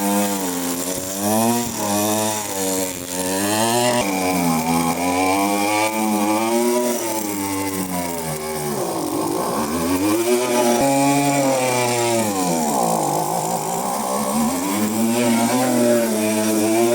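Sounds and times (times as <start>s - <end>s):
small two-stroke engine revving: 0.0s - 16.9s.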